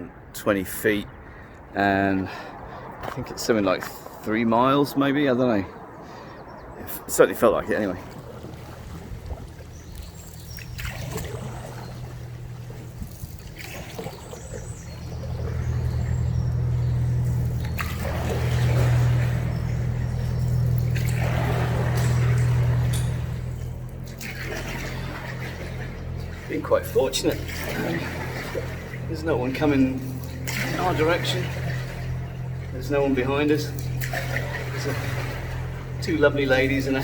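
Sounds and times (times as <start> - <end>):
steady low hum: 0.0 - 37.0
water trickling and pouring: 7.9 - 37.0.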